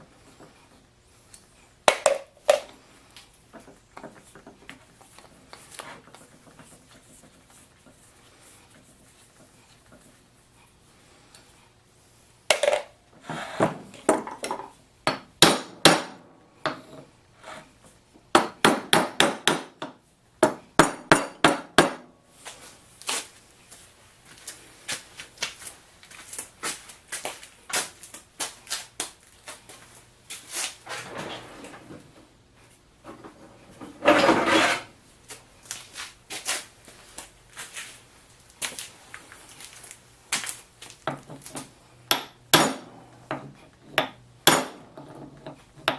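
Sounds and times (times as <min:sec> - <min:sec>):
hammer striking metal vise: 0:18.4 - 0:22.0, 0:42.1 - 0:45.9.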